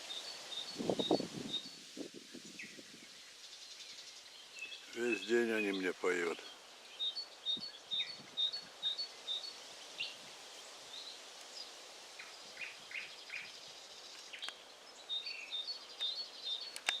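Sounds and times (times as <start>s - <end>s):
nightingale singing: 0.0s - 17.0s.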